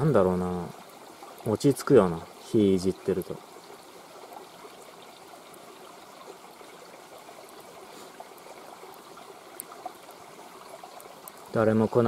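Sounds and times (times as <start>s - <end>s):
stream babbling over rocks: 0.0s - 12.0s
campfire pops: 3.1s - 11.8s.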